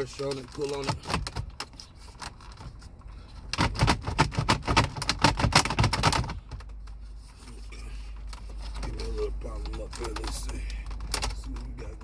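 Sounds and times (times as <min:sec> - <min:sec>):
plastic trim clicking and rattling: 0:00.1 - 0:02.9, 0:03.5 - 0:06.8, 0:08.3 - 0:11.8.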